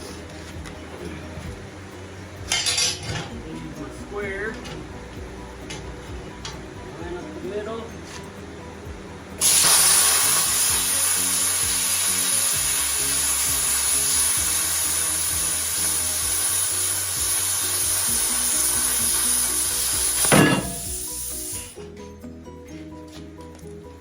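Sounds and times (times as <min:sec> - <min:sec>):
plasma cutter arc hissing: 0:09.4 - 0:21.8.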